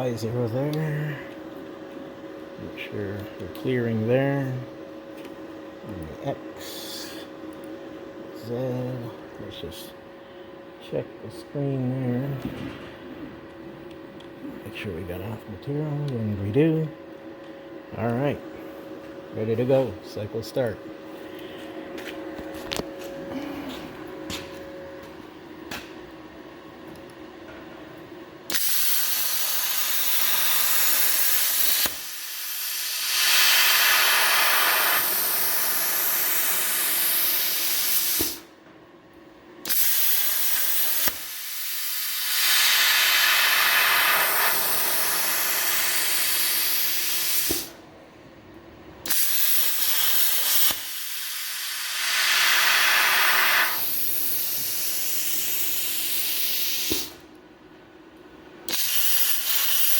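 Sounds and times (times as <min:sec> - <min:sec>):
plasma cutter hissing: 0:28.5 - 0:38.4, 0:39.7 - 0:47.7, 0:49.1 - 0:57.2, 0:58.7 - 0:59.9.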